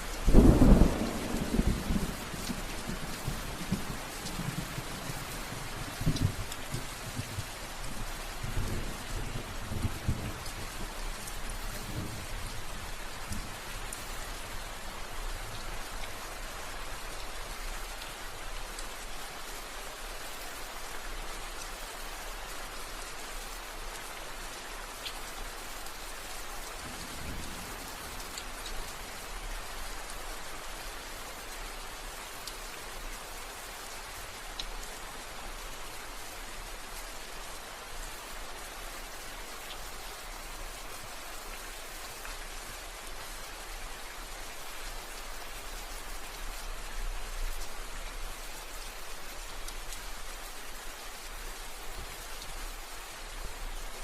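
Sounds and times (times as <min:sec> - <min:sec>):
steady rain falling: 0:00.0 - 0:54.0
low rumbles of thunder: 0:00.3 - 0:07.5, 0:08.4 - 0:12.5.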